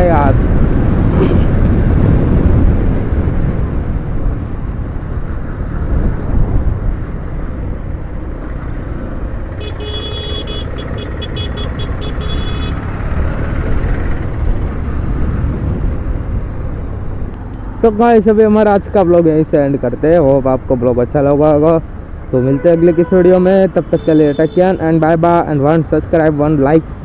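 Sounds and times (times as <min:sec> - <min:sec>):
motorcycle road and engine noise: 0:00.0 - 0:27.0
vehicle horn beeping: 0:09.6 - 0:12.8, 0:22.4 - 0:24.8.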